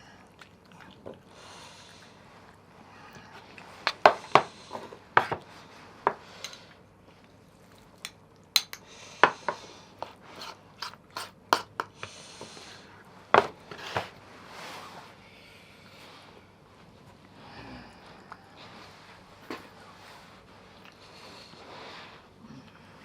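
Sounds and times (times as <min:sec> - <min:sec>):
dishes and cutlery clinking: 0:08.6 - 0:08.9.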